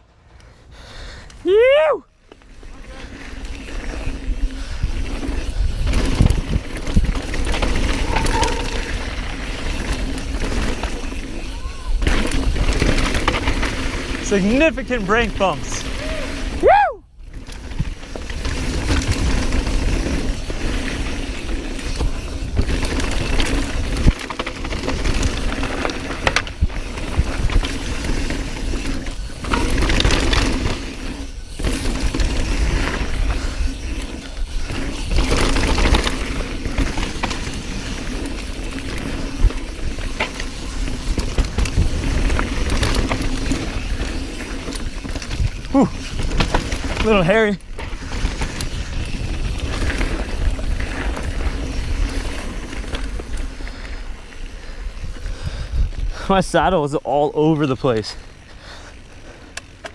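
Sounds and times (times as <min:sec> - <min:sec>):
tyres on dirt: 0:00.1 - 0:16.6, 0:17.2 - 0:59.9
bike rattling and knocking: 0:02.3 - 0:16.6, 0:17.3 - 0:59.9
wind rushing over microphone: 0:03.4 - 0:14.4, 0:54.2 - 0:57.0.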